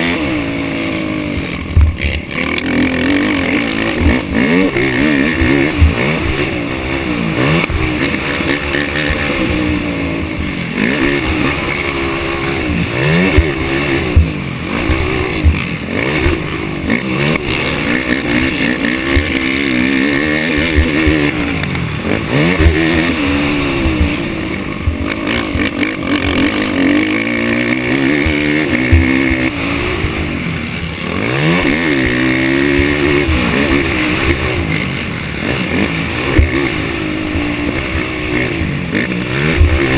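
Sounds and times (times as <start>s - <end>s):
atv engine revving: 0.0s - 39.9s
low thumps and knocks: 1.7s - 2.1s, 5.3s - 6.4s, 13.3s - 16.4s, 28.2s - 29.5s.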